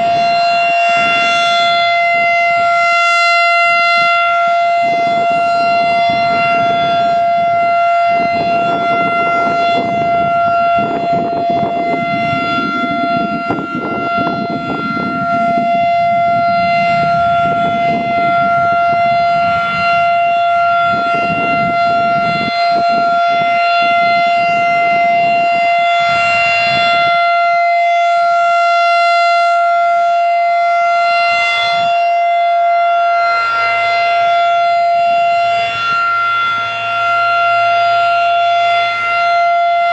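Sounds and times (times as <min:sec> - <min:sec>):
rotating warning siren steady tone: 0:00.0 - 0:39.9.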